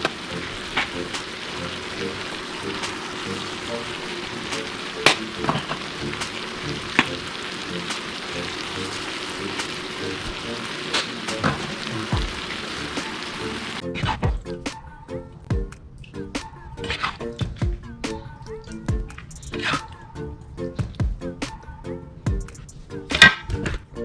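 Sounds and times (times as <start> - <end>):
meat sizzling in a pan: 0.2 - 13.8
sharp pops and crackles: 4.5 - 13.2.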